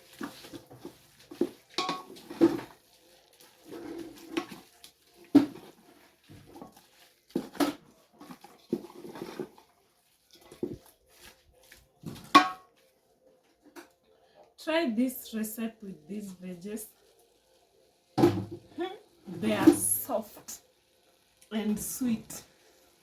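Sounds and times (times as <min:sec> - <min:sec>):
spoon scraping and clinking in pot: 0:01.4 - 0:02.8.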